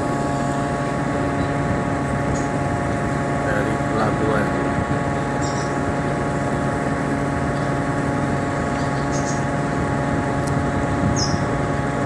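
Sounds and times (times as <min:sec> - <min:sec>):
ship engines droning: 0:00.0 - 0:12.0.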